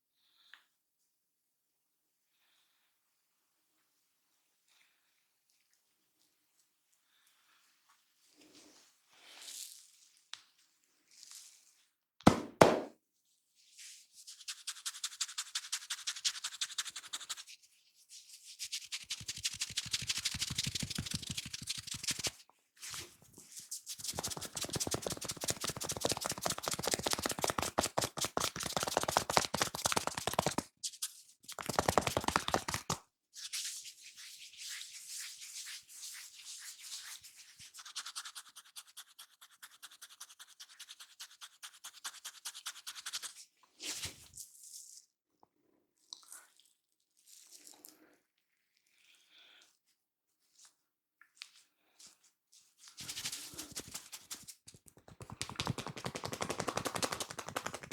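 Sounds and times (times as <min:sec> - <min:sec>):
hair and scalp rubbing: 0:18.7 - 0:22.3, 0:23.8 - 0:33.0, 0:53.0 - 0:57.9.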